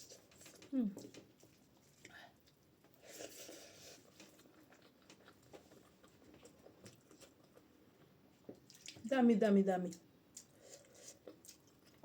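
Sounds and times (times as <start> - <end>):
person eating: 0.0 - 7.7, 10.3 - 12.0.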